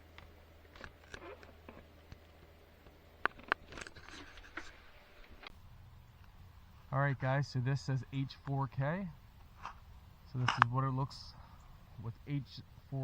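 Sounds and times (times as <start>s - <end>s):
hands handling camera rustling: 3.2s - 5.5s.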